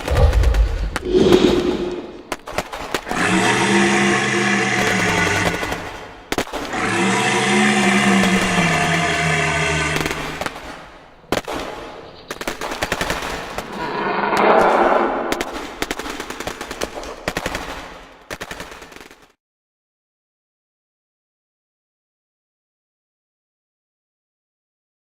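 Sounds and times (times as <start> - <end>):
steady pitched drone: 0.0 - 2.3.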